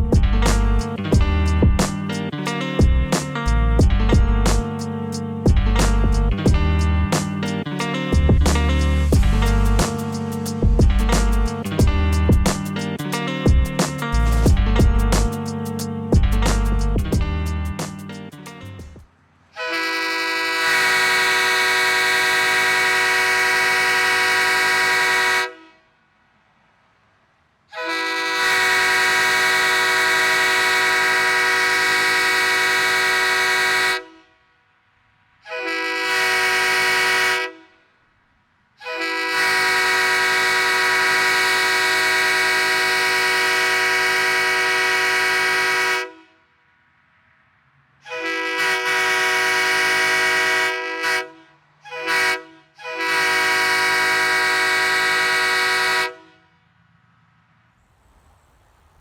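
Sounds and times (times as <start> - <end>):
air horn chord blasts: 3.1 - 18.1, 19.6 - 25.8, 27.7 - 34.4, 35.4 - 37.8, 38.8 - 46.4, 48.0 - 56.5.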